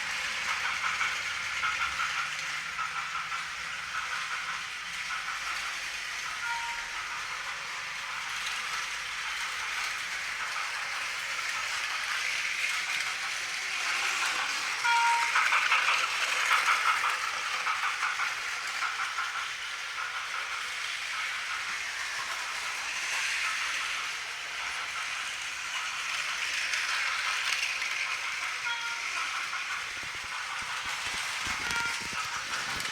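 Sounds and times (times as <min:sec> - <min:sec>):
toy train motor whir: 0:00.0 - 0:32.9
wheels clicking over track joints: 0:00.0 - 0:32.9.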